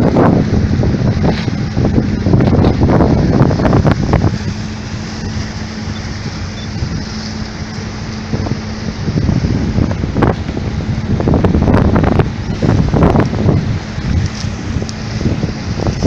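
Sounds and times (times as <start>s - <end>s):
motorboat engine humming: 0.0s - 16.0s
wind buffeting microphone: 0.0s - 16.0s.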